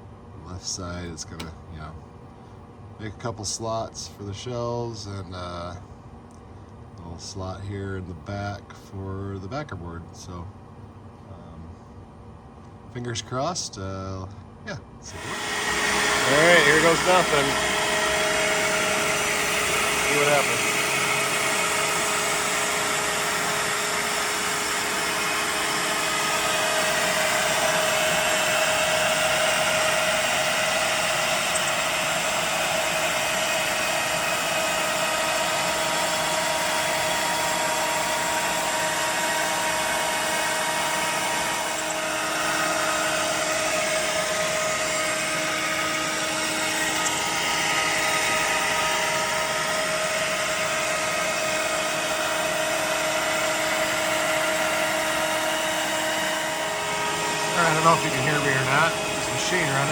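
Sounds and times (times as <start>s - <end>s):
cnc router spindle whining: 15.1s - 59.9s.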